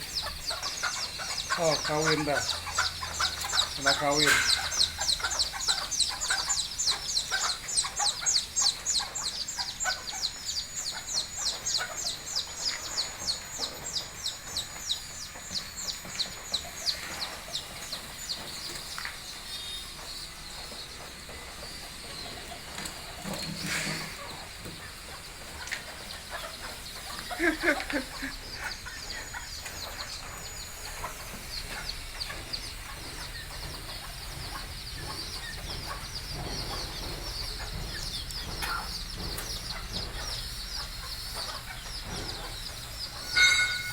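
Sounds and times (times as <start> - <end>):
chickens clucking and chirping: 0.0 - 43.9
chicken call: 0.2 - 8.2, 26.4 - 30.0.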